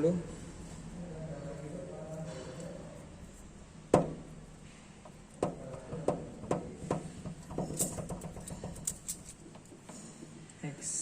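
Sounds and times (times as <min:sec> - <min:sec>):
hand tools tapping on metal: 0:05.0 - 0:10.6.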